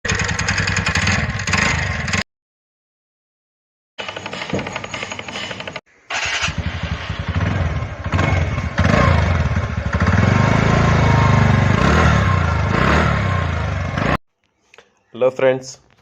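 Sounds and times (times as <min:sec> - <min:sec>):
scooter engine revving: 0:00.1 - 0:02.2, 0:06.1 - 0:14.2.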